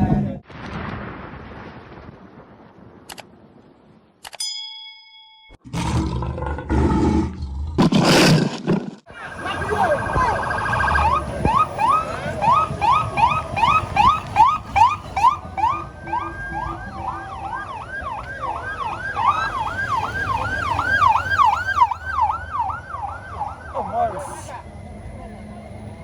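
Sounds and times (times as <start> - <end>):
electronic siren yelping: 9.1 - 24.6.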